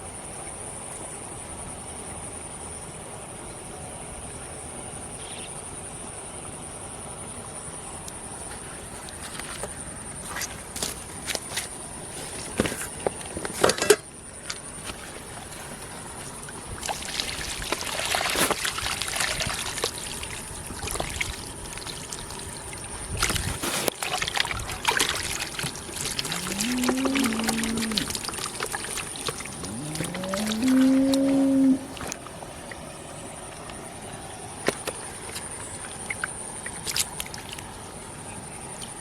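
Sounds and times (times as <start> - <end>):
water splashing and trickling: 8.1 - 39.0
low animal call: 26.2 - 28.4, 29.5 - 32.3.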